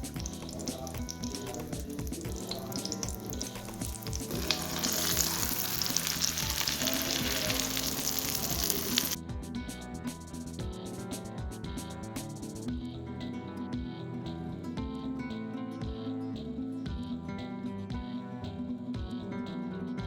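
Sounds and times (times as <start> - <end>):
food sizzling in hot oil: 0.0 - 9.2
background music: 0.0 - 20.0.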